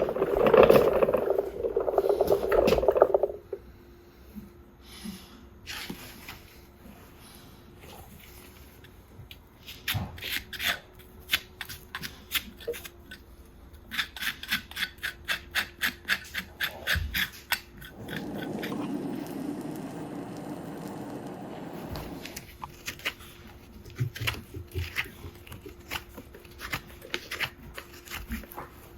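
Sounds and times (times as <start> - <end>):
rasp filing a hoof: 9.7 - 13.2, 13.8 - 19.7.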